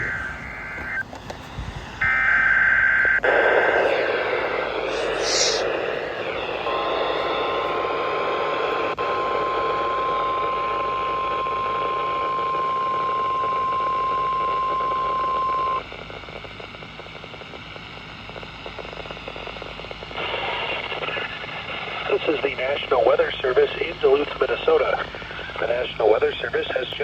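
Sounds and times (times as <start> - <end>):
radio static hiss: 0.0 - 27.0
steady high alarm tone: 2.0 - 7.8.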